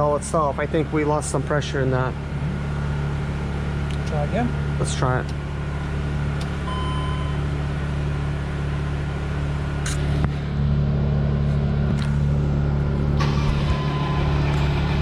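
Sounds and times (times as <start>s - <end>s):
diesel engine cranking on starter: 13.0s - 15.0s.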